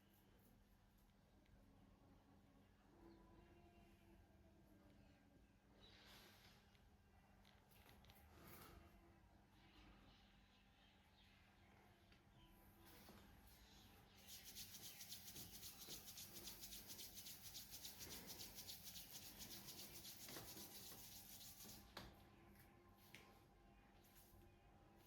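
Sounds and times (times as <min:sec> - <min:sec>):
rubbing strokes of massage: 0:14.2 - 0:21.9.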